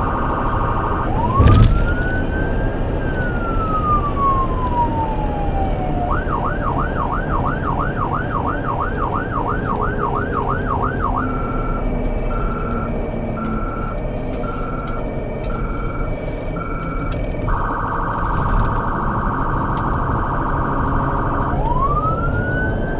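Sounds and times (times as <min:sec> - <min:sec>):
electronic siren wailing and yelping: 0:00.0 - 0:22.9
loud thump: 0:01.2 - 0:02.3.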